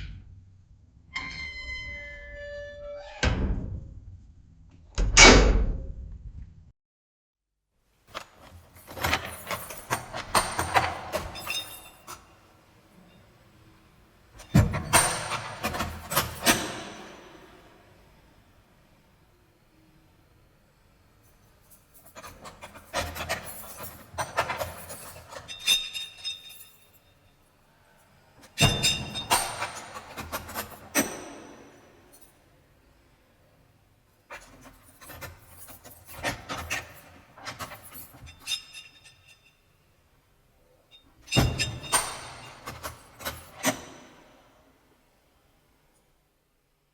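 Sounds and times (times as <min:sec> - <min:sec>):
steel cell door clanking: 0:01.2 - 0:03.8, 0:08.7 - 0:12.4, 0:14.4 - 0:17.8, 0:28.4 - 0:32.1, 0:41.0 - 0:44.6
metal door slam echo: 0:05.0 - 0:05.9
keys working a heavy lock: 0:08.1 - 0:12.5, 0:14.4 - 0:17.7, 0:21.2 - 0:27.2, 0:28.4 - 0:32.4, 0:34.3 - 0:39.5, 0:41.2 - 0:44.4
metallic keys jingle: 0:08.4 - 0:12.4, 0:21.2 - 0:27.3, 0:34.3 - 0:39.5.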